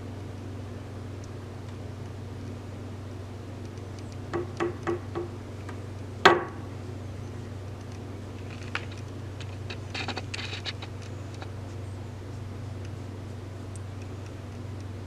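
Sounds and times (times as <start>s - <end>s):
steady low hum: 0.0s - 15.0s
brush scratching lightly: 8.5s - 11.8s.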